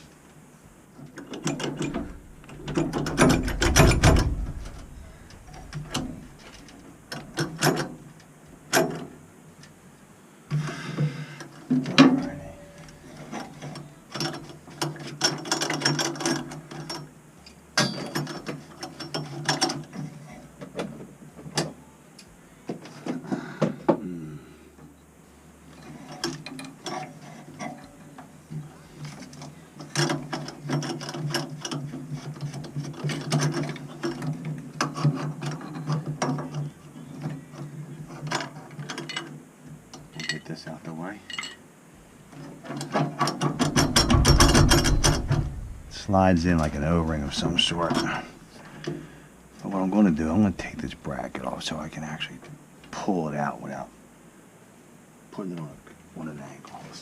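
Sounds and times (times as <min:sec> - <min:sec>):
metal parts and tools clicking: 0:42.7 - 0:45.9.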